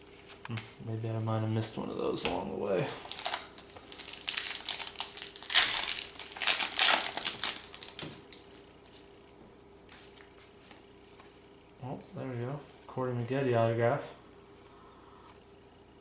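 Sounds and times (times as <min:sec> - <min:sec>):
wrapper crinkling: 0:03.0 - 0:08.6.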